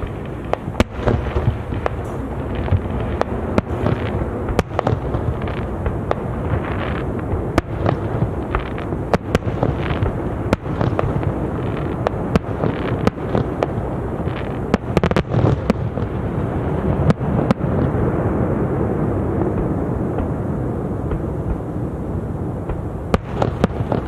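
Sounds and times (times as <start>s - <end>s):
continuous low rumble: 0.0s - 24.0s
firework bangs and crackles: 0.0s - 24.0s.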